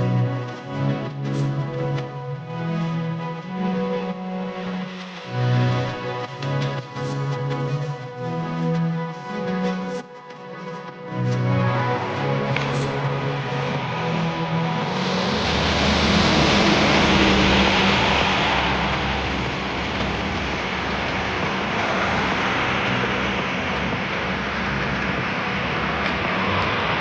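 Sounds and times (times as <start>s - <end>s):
tyres hissing on wet road: 11.6s - 27.0s.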